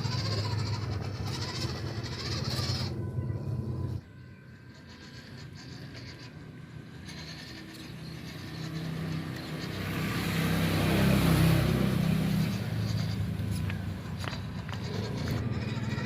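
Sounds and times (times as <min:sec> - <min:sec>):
vehicle driving past: 0:05.3 - 0:16.0.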